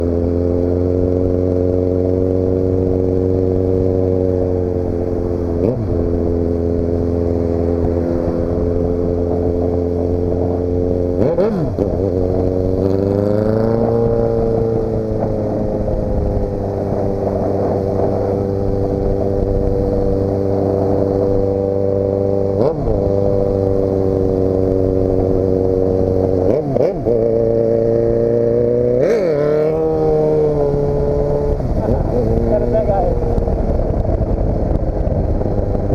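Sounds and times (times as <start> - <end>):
motorcycle engine running: 0.0 - 35.9.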